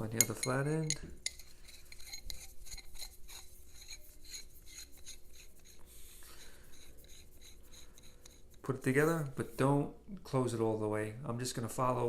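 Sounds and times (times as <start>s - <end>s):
metal tubes clicking and scraping: 0.0s - 8.7s.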